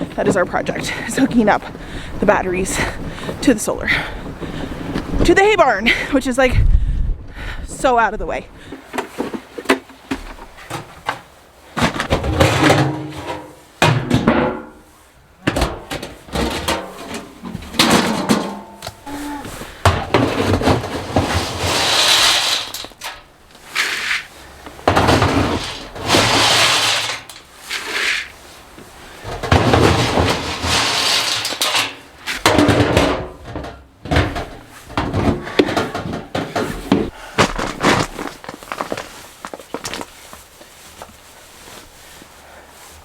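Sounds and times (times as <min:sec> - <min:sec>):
knocks and thuds: 0:08.7 - 0:14.7.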